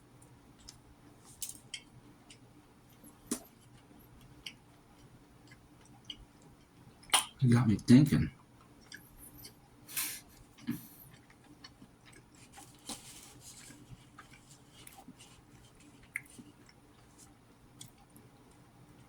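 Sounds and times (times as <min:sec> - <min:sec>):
faint chewing: 0:00.2 - 0:07.4, 0:08.4 - 0:19.0
mouth clicks and smacks: 0:07.0 - 0:07.4.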